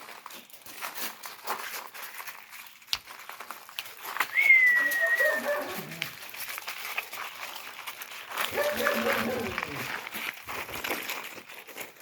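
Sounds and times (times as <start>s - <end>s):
light clicks and scratches: 0.0s - 12.0s
puppy whining: 4.4s - 6.2s.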